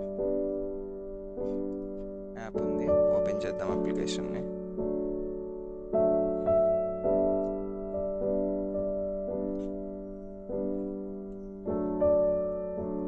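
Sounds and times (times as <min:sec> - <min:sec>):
piano music: 0:00.0 - 0:13.0.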